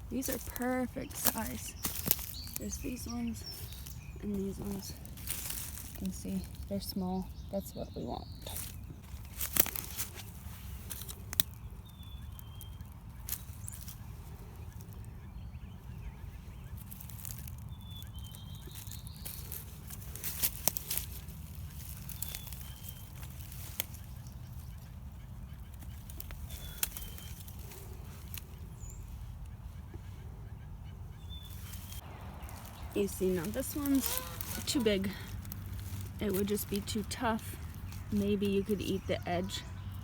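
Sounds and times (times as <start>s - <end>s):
twigs snapping and crackling: 0.0s - 30.3s, 31.2s - 40.0s
steady low rumble: 0.0s - 40.0s.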